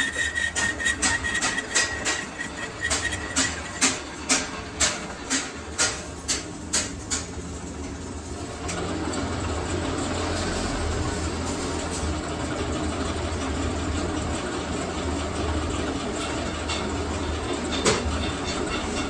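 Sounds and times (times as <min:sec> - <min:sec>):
lathe running: 0:00.0 - 0:05.7.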